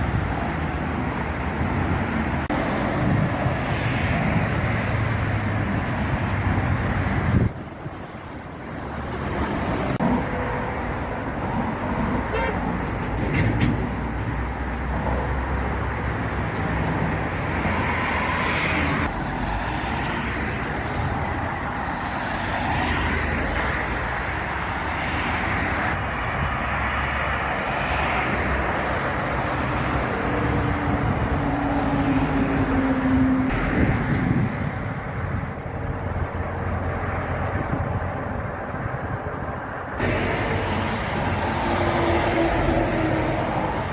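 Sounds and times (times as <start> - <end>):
road traffic engines and tyres: 0.0 - 43.9.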